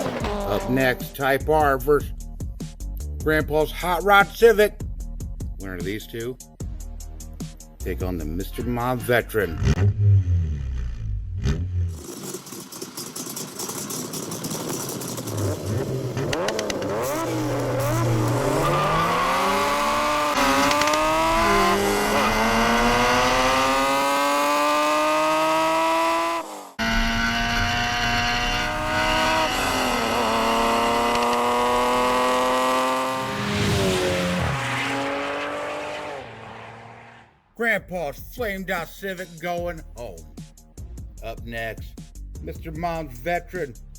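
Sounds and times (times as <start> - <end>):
race car engine accelerating: 9.6 - 37.4.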